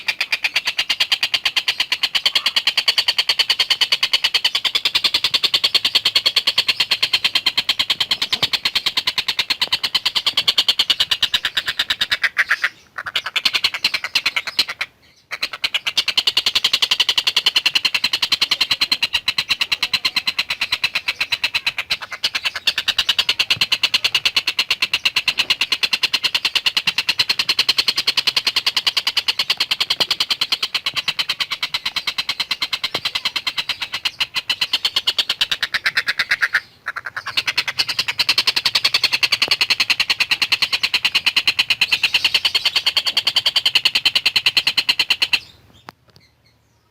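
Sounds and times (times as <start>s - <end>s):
kingfisher chattering call: 0.0s - 45.5s.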